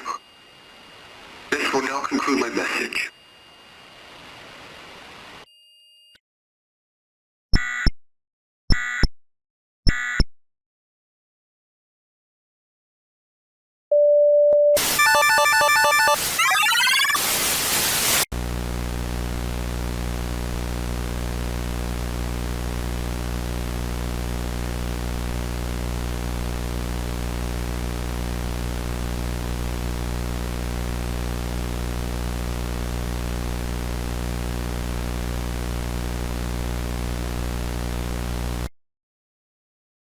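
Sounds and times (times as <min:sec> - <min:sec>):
static hiss: 0:00.0 - 0:05.4, 0:14.8 - 0:38.7
burst of noise: 0:16.0 - 0:18.5
low buzzing hum: 0:18.3 - 0:38.7.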